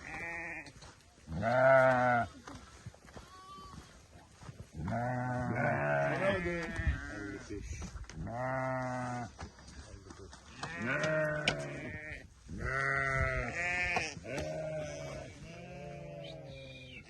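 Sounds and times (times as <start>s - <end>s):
sheep bleating: 0.0s - 2.4s, 3.1s - 3.9s, 4.8s - 7.5s, 8.2s - 9.3s, 10.5s - 17.0s.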